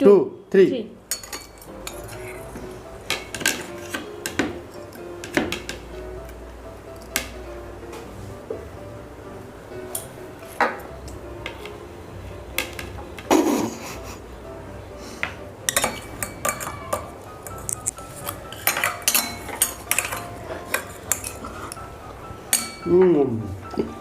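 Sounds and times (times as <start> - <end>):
spoons clinking on plates and bowls: 1.1 - 5.8, 15.6 - 21.9, 22.5 - 23.1.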